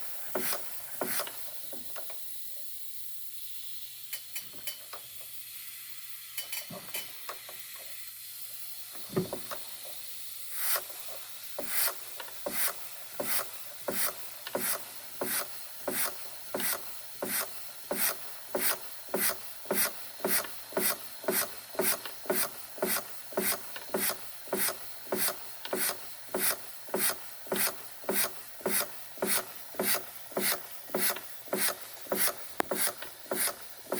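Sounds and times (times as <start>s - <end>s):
steam hiss: 0.0s - 33.9s
toy steam engine puffing: 0.0s - 33.9s.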